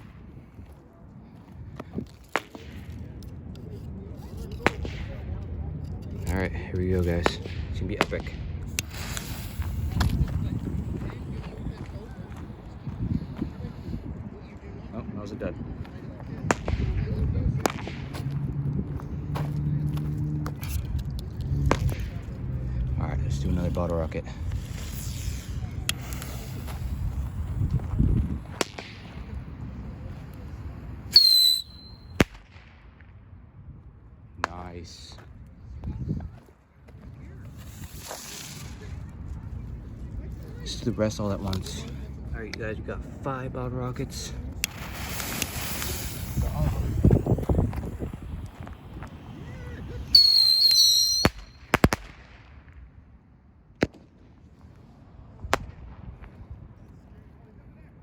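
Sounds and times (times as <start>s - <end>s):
firework cracks and pops: 7.1s - 12.6s, 16.3s - 18.4s, 24.4s - 29.7s, 32.2s - 33.2s, 37.5s - 39.2s, 44.1s - 52.9s, 53.8s - 54.4s, 55.3s - 56.4s
rocket whistle: 31.1s - 32.2s, 50.0s - 51.7s.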